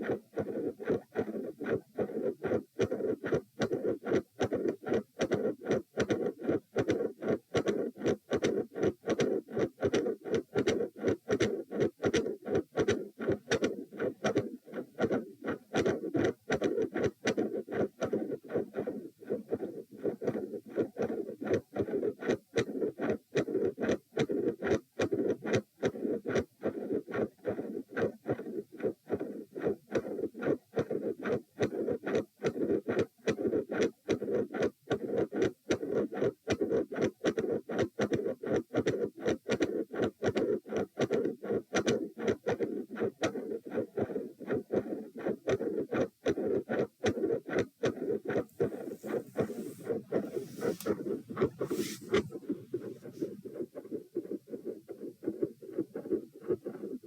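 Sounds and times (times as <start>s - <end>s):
heartbeat thuds: 47.6s - 57.0s
heart murmur whooshing: 47.9s - 57.0s.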